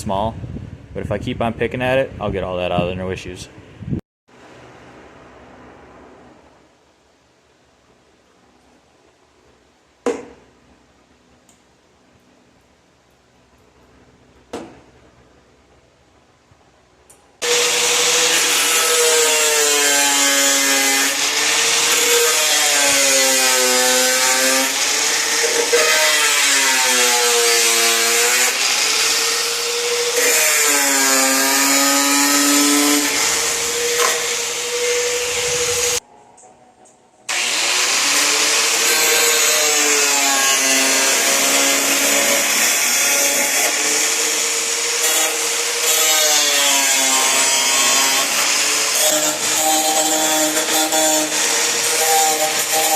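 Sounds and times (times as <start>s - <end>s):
angle grinder cutting metal: 17.4s - 36.0s, 37.3s - 52.9s.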